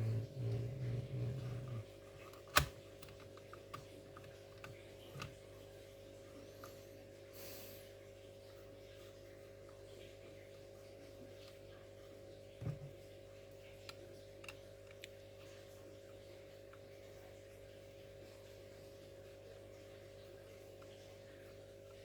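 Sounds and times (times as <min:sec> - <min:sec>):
low hum: 0:00.0 - 0:01.9.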